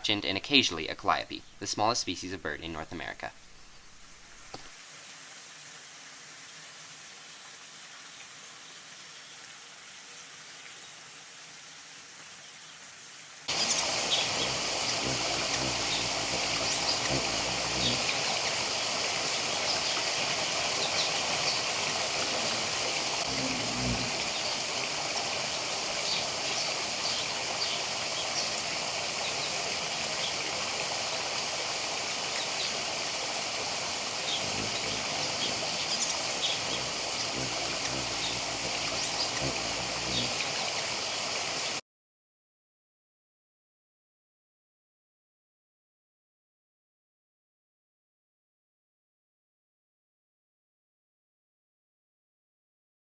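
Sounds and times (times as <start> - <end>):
high bird chirps: 13.5 - 23.0, 34.3 - 41.2.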